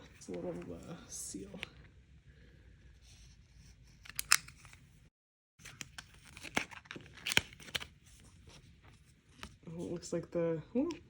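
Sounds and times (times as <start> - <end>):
seal tearing: 5.6 - 8.0
packaging crinkling: 5.6 - 8.6.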